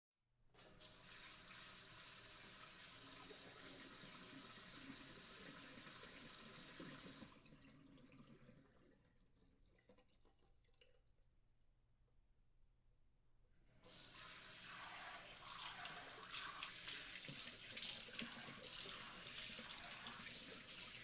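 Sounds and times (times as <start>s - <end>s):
faint dripping water: 4.7s - 11.3s.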